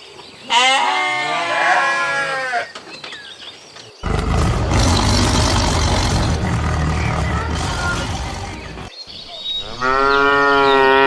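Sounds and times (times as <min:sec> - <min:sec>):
livestock bleat: 0:00.5 - 0:02.7, 0:09.6 - 0:11.0
loud low rumbling noise: 0:04.0 - 0:08.9.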